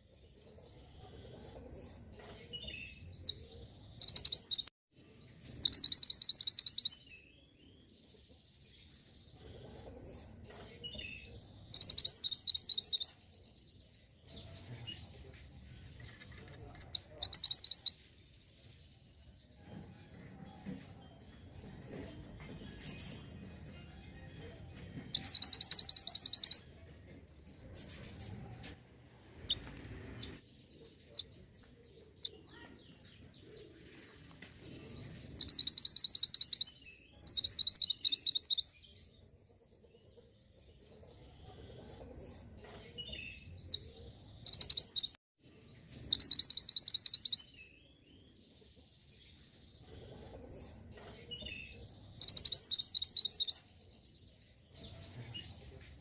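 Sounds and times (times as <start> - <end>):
soft bird chirps: 0.0 - 19.8, 25.1 - 39.2, 39.8 - 56.0
songbird trilling: 5.7 - 7.0, 11.8 - 13.2, 17.2 - 17.9, 25.2 - 26.6, 35.4 - 38.7, 46.2 - 47.5, 52.2 - 53.6.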